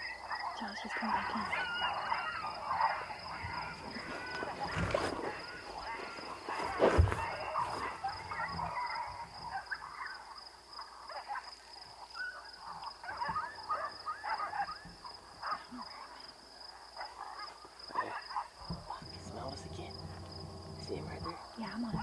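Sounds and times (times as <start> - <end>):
animal squeals: 0.9 - 9.2, 18.9 - 21.3.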